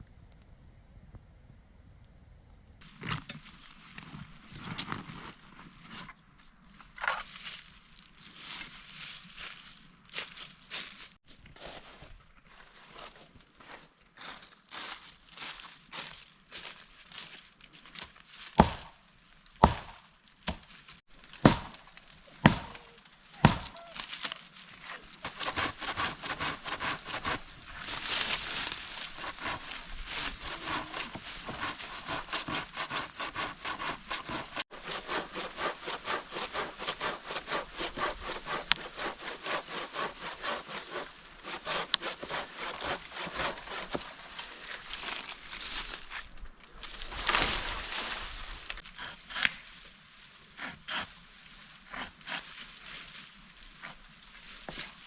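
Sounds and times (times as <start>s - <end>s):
handsaw cutting wood: 22.4s - 22.8s, 25.2s - 44.8s.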